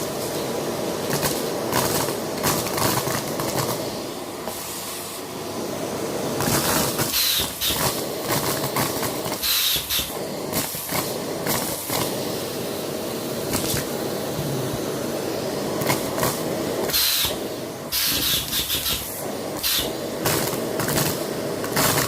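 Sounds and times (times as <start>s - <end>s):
vacuum cleaner running: 0.0s - 22.0s
vacuum cleaner whistle: 7.1s - 7.9s, 9.4s - 10.2s.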